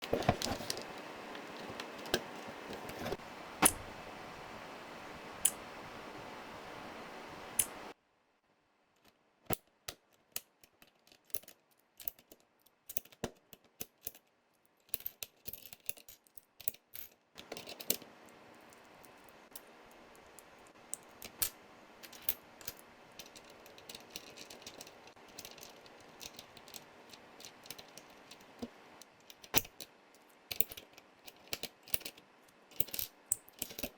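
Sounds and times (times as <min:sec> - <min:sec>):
steady background hiss: 0:00.0 - 0:08.7, 0:17.4 - 0:33.9.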